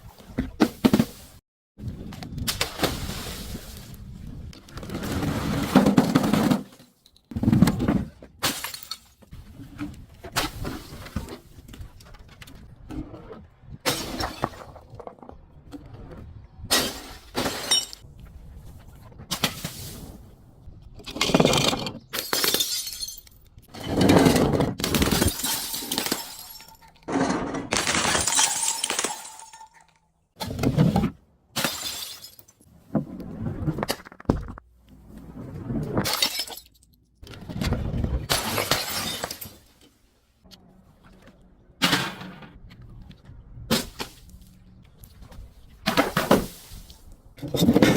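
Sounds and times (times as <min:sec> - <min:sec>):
breaking and crushing: 0:21.0 - 0:30.0
glass crunching and shattering: 0:21.5 - 0:23.6, 0:24.8 - 0:30.0, 0:31.6 - 0:32.6, 0:36.0 - 0:36.9, 0:38.3 - 0:39.6.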